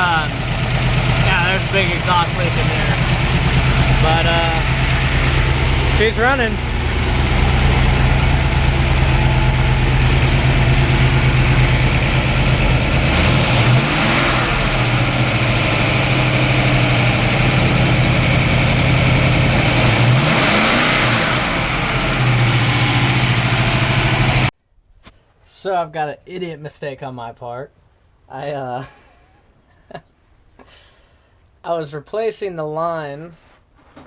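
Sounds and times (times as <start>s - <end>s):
car engine idling and revving: 0.0s - 24.5s.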